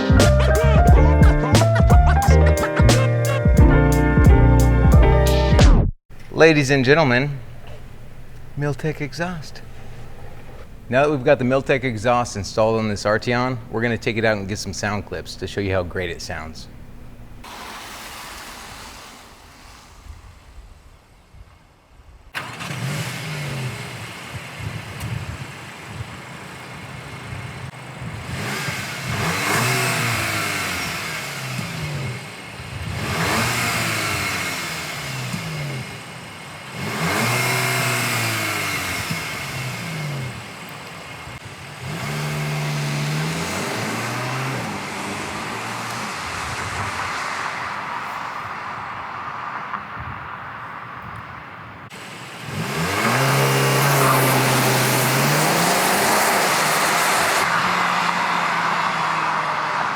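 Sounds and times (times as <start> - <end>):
car engine accelerating hard: 22.4 - 50.4, 51.9 - 59.9.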